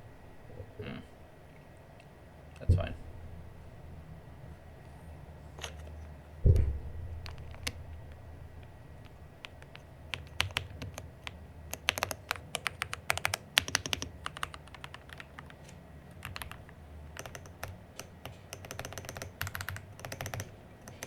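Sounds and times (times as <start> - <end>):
mechanical keyboard keys clacking: 7.2 - 7.8, 8.6 - 21.0.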